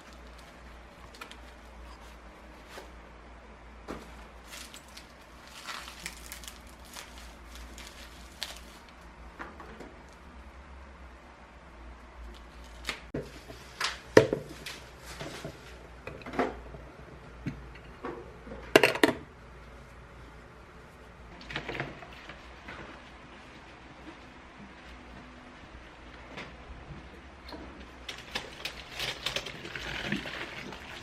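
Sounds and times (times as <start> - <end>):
kitchenware clinking and knocking: 17.5 - 19.3.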